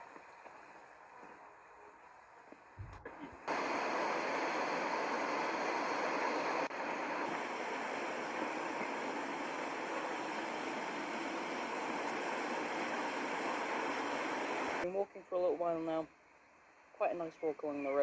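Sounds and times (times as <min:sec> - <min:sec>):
river water rushing: 0:03.5 - 0:14.8.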